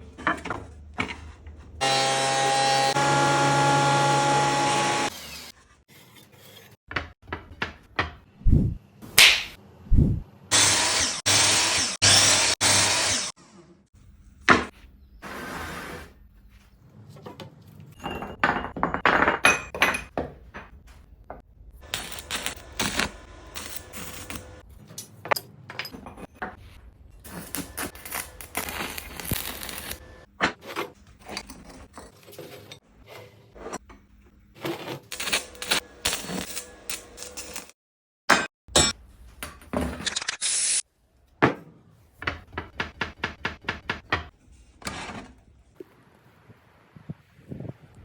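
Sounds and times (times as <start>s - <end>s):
tapping and knocking on wood and metal: 42.2s - 44.4s.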